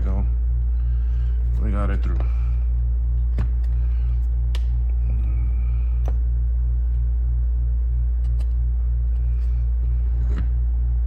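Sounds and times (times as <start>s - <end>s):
pulsing low hum: 0.0s - 11.0s.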